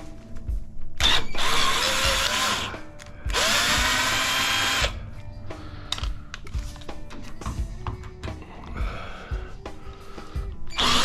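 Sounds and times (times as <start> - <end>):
power drill whining: 1.0 - 5.0, 10.7 - 11.0.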